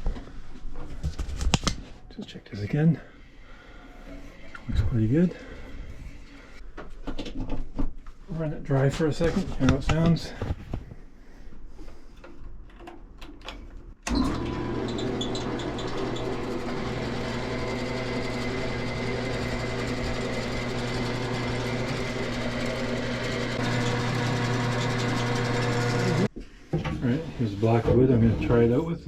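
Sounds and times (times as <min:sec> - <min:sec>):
bandsaw running: 0:14.1 - 0:26.3.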